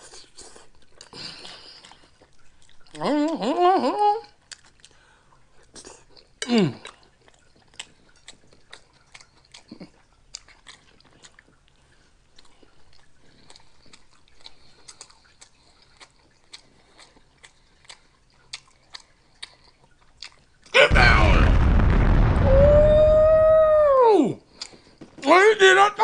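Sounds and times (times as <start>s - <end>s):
person chewing food: 0.0s - 3.4s, 4.3s - 20.7s, 24.5s - 25.0s
wet mouth clicks and smacks: 4.4s - 5.0s, 5.6s - 11.8s, 12.4s - 20.7s, 24.5s - 24.8s.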